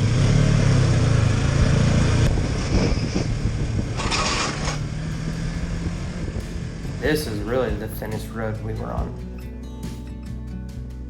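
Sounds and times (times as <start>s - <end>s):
motorcycle engine running: 0.0s - 9.6s
wind noise: 1.0s - 9.2s.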